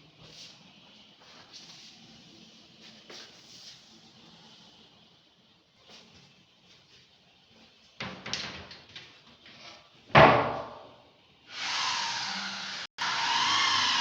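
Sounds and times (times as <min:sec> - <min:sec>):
knocks and clatters on workbench: 0:10.2 - 0:11.0
power tool whirring: 0:11.5 - 0:14.0.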